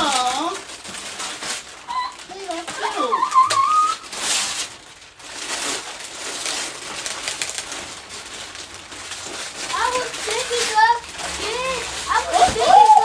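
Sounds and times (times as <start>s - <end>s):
wrapping paper rustling and tearing: 0.0s - 13.0s.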